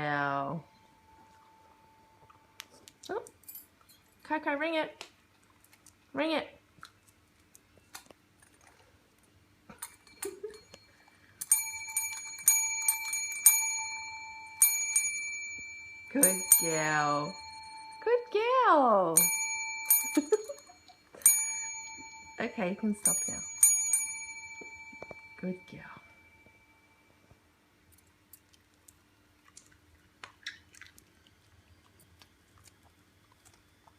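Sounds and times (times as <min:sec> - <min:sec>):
small metal bell ringing: 0:09.7 - 0:27.1
dog chewing: 0:28.4 - 0:33.9.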